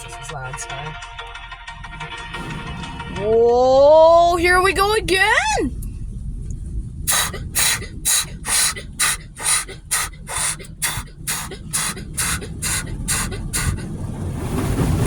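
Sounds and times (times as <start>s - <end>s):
low rumble: 0.0s - 15.0s
car wash spray jets hissing: 4.1s - 15.0s.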